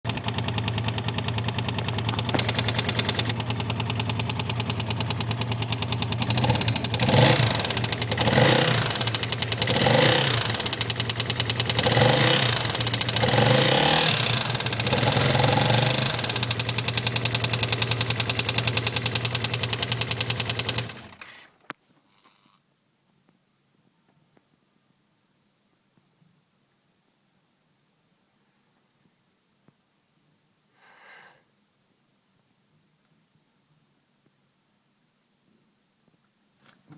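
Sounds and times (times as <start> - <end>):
scooter engine idling and revving: 0.1 - 21.5.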